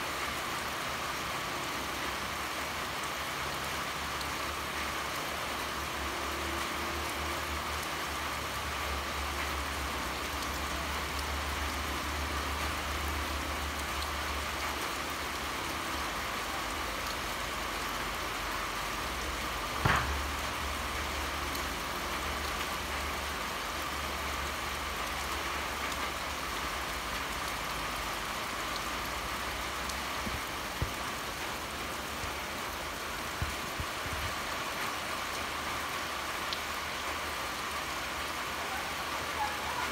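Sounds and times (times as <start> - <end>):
steady rain falling: 0.0 - 39.9
sharp knock: 19.8 - 20.3.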